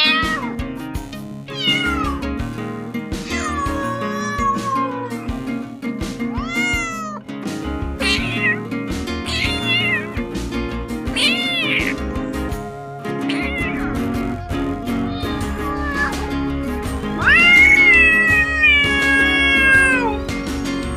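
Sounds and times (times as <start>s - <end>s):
cat meowing: 0.0s - 0.6s, 1.5s - 2.2s, 3.2s - 5.3s, 6.3s - 7.2s, 8.0s - 10.2s, 11.1s - 12.1s, 13.2s - 16.4s, 17.2s - 20.2s
background music: 0.0s - 20.9s.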